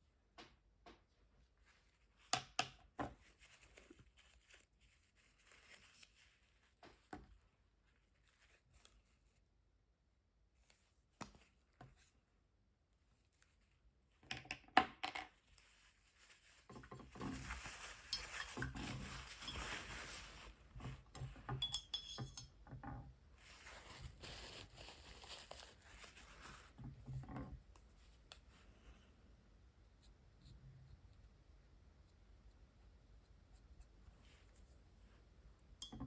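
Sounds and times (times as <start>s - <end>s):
scratchy rustling: 3.2s - 6.8s, 15.5s - 20.6s, 23.4s - 26.8s.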